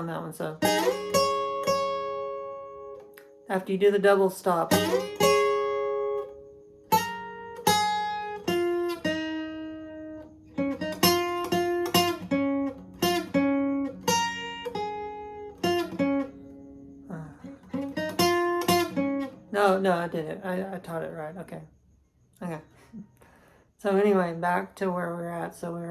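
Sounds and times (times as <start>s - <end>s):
guitar playing plucked notes: 0.6s - 3.4s, 4.6s - 20.4s.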